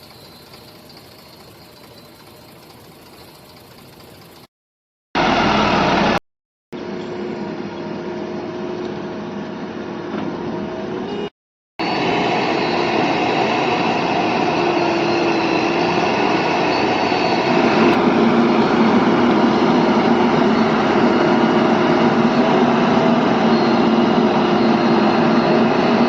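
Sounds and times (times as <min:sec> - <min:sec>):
diesel engine drone: 0:00.0 - 0:04.5, 0:05.2 - 0:06.2, 0:11.8 - 0:26.0
faint steady whine: 0:00.0 - 0:04.5.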